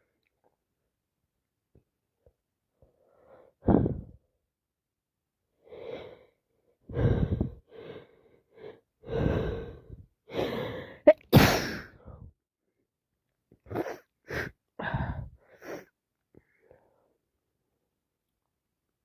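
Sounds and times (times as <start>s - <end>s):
person taking catching breaths: 5.6s - 12.3s, 13.6s - 17.1s
person sneezing: 11.1s - 12.0s.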